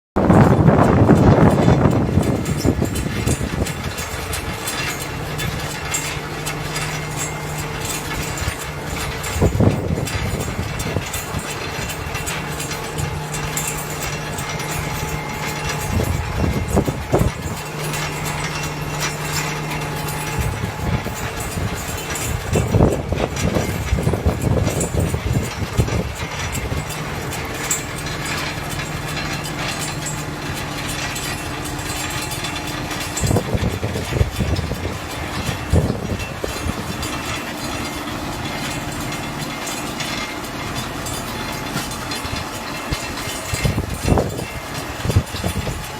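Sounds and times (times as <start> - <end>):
machine engine running: 0.2 - 45.9.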